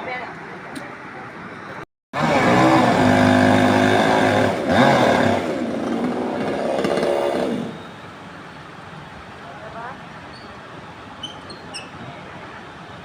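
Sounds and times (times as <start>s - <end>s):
engine running: 2.2s - 8.0s.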